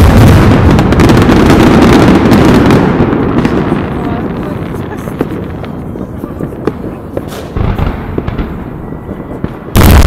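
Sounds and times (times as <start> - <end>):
loud blast: 0.0 - 5.0, 7.2 - 10.0
distant fireworks popping: 0.0 - 10.0.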